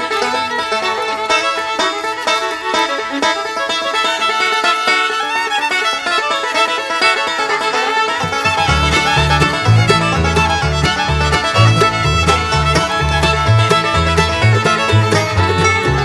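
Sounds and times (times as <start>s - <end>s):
bluegrass fiddle music: 0.0s - 16.0s
low bass line: 8.2s - 16.0s.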